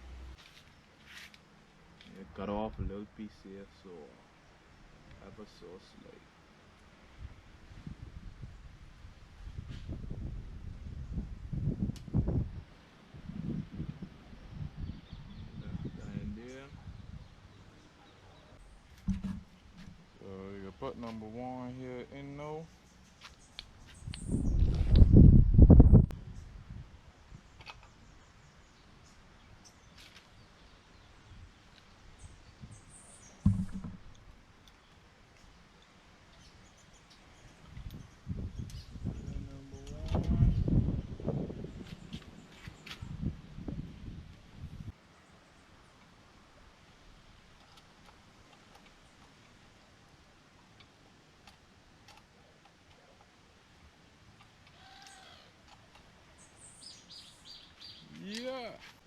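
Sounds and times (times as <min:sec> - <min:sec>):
dull thump: 0:19.0 - 0:20.0, 0:33.4 - 0:34.2
faint bird chirps: 0:54.7 - 0:55.6, 0:56.3 - 0:58.6.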